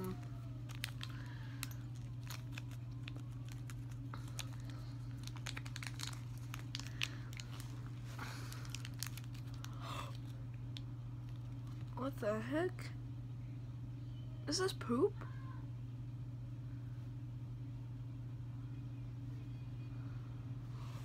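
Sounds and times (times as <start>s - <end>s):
steady low hum: 0.0s - 21.0s
packaging being torn and crinkled: 0.1s - 12.0s.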